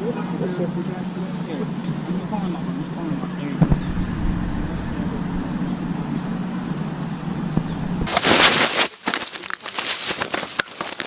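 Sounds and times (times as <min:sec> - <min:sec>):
vehicle engine idling: 0:00.0 - 0:08.1
loud rustle: 0:07.4 - 0:11.0.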